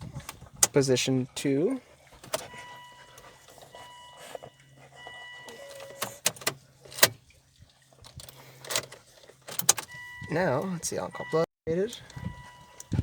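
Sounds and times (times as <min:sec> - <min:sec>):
ignition key clicks: 0:08.1 - 0:10.4.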